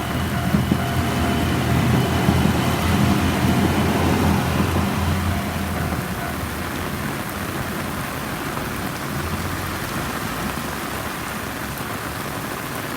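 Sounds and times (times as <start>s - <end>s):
diesel railcar rumble: 0.0s - 9.9s
rain falling: 0.0s - 12.9s.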